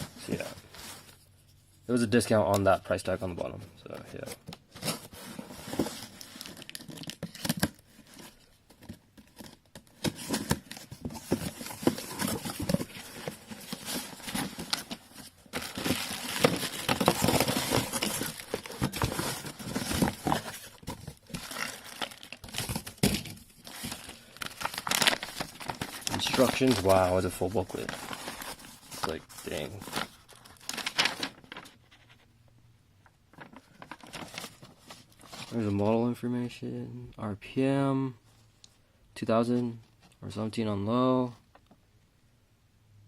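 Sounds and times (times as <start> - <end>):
paper and plastic crinkling and tearing: 4.0 - 31.8, 33.3 - 35.8.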